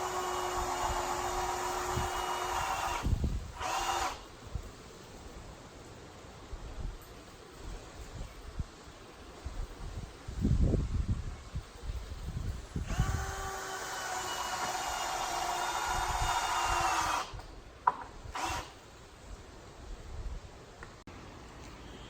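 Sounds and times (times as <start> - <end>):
power drill driving screw: 0.0 - 4.2, 12.8 - 17.5, 18.3 - 18.8.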